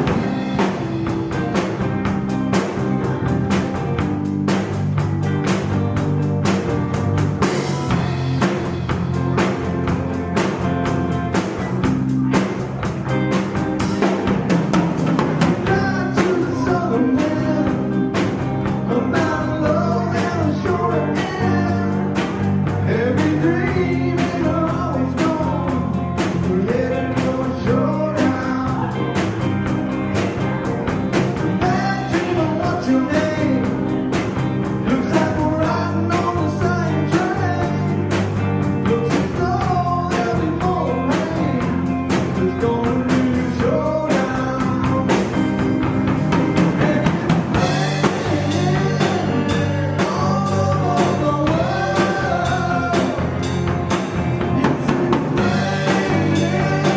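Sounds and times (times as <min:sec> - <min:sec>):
live rock band playing: 0:00.0 - 0:56.9
person singing: 0:15.6 - 0:29.5, 0:31.2 - 0:56.9.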